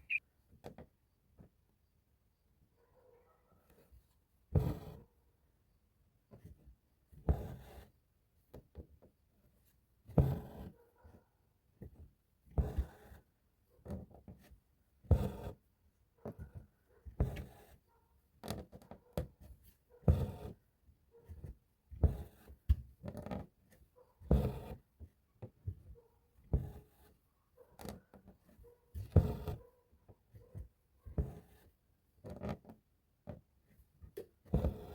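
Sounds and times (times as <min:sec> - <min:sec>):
small taps and scratches: 0:06.2 - 0:14.6, 0:15.2 - 0:20.6, 0:21.2 - 0:34.9.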